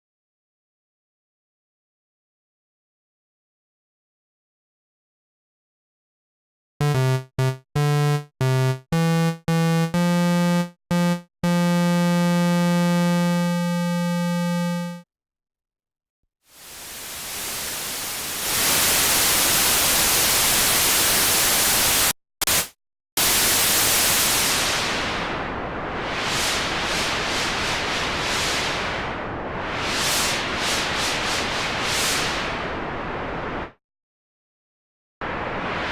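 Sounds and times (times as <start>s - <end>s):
synthesizer short pitched notes: 6.8s - 15.0s
white-noise hiss like wind: 16.6s - 20.8s.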